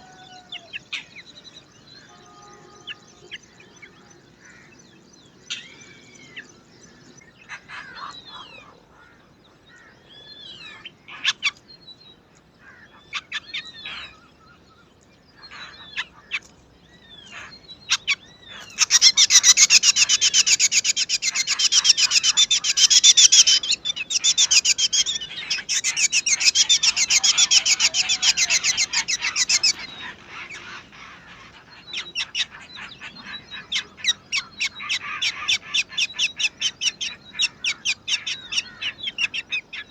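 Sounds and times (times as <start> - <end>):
chicks begging calls: 18.0 - 39.8.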